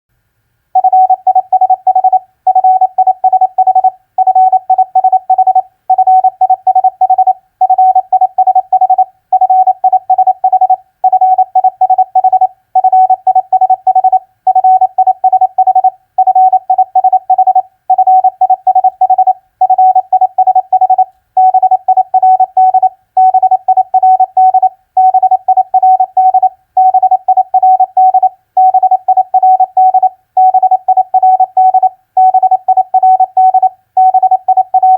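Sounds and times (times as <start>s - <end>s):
morse code tone: 0.8s - 34.9s.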